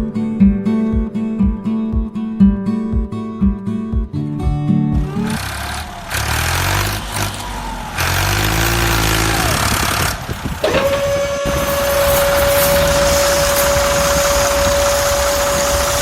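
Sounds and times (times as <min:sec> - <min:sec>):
motor running roughly: 0:05.0 - 0:16.0
steady whine: 0:05.0 - 0:16.0.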